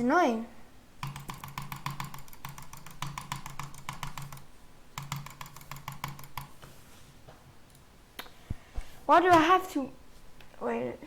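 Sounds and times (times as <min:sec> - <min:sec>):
mouse button clicking rapidly: 0:01.0 - 0:06.6.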